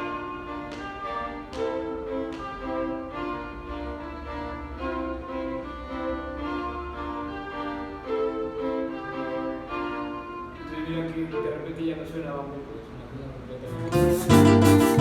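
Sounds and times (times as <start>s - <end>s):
cello bowing held notes: 0.0s - 11.7s, 13.7s - 15.0s
violin bowing held notes: 13.7s - 15.0s.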